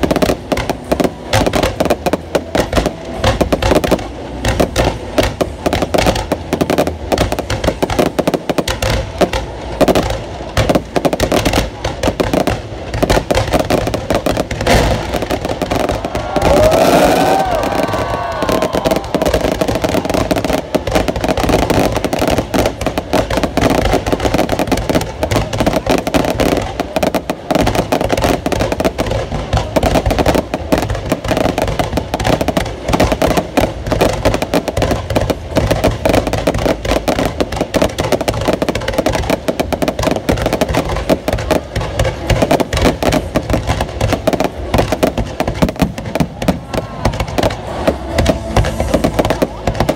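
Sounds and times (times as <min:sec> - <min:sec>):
fireworks crackling bangs: 0:00.0 - 0:49.9
rising firework whistle: 0:15.7 - 0:20.5, 0:46.3 - 0:49.9.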